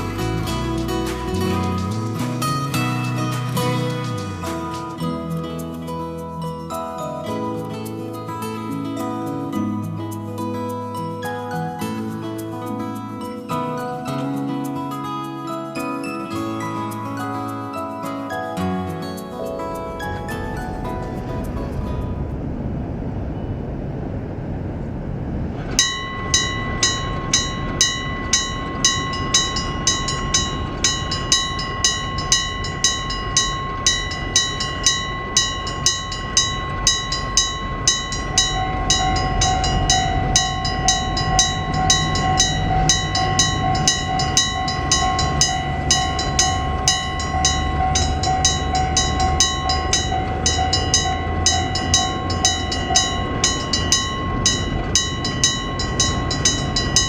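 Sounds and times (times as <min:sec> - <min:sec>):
train rumble: 0:00.0 - 0:06.8, 0:19.1 - 0:57.0
steady whine: 0:19.2 - 0:57.0
level crossing bell clanging: 0:25.7 - 0:57.0.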